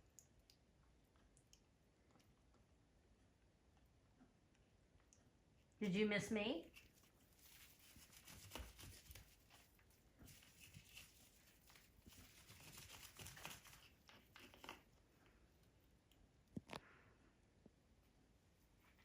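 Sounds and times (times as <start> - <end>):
faint clicks and rustles: 6.6 - 19.0.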